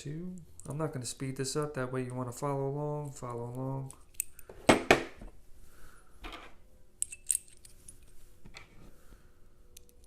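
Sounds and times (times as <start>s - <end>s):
soft handling noises: 3.0s - 10.0s
metal hardware clinking: 6.4s - 8.1s.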